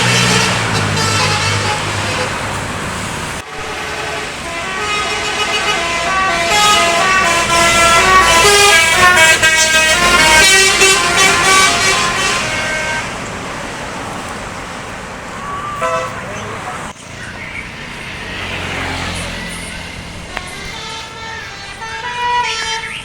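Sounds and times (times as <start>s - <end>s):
bus musical horn tune: 0.0s - 13.5s, 15.4s - 16.4s, 19.5s - 23.0s
traffic and engine noise: 0.0s - 23.0s.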